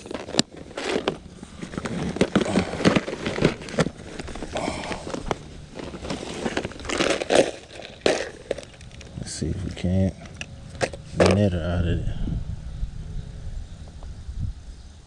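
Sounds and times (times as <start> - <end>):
irregular crackling and rustling: 0.0 - 11.5.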